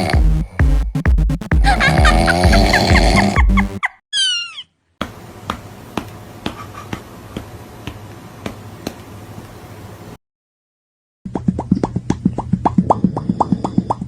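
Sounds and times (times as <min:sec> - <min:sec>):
steady background noise: 0:05.0 - 0:10.2.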